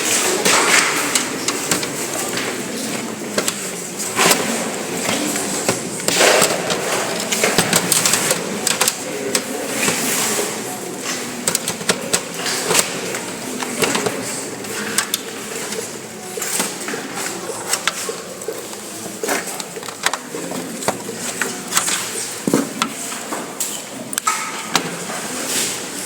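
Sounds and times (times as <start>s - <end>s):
computer parts clicking and knocking: 0.4s - 10.1s, 11.4s - 23.0s.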